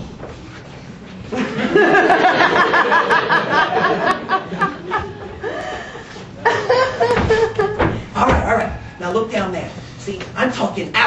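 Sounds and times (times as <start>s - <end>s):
person laughing: 3.7s - 8.0s.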